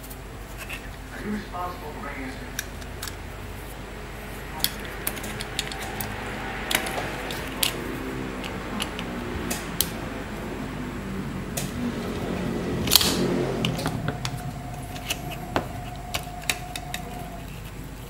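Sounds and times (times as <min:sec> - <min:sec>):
steady low hum: 0:00.0 - 0:18.0
plastic parts clicking: 0:02.5 - 0:03.2, 0:12.9 - 0:18.0.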